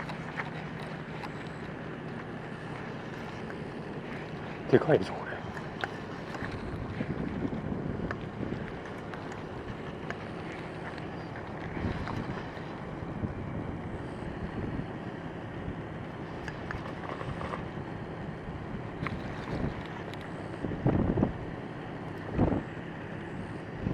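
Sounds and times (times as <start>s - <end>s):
faint clicks: 0.0s - 13.0s
wind on microphone: 0.0s - 14.9s, 20.6s - 21.4s.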